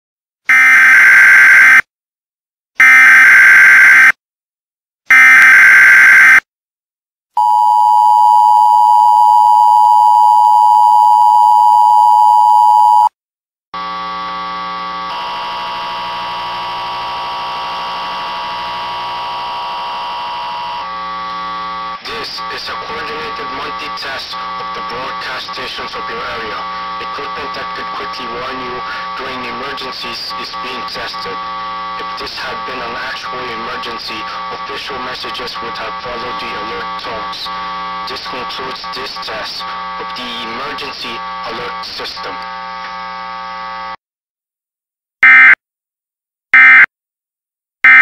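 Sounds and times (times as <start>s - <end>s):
two-tone attention signal: 7.4s - 13.1s
steady buzzing drone: 13.8s - 44.0s
screeching data bursts: 15.1s - 42.4s.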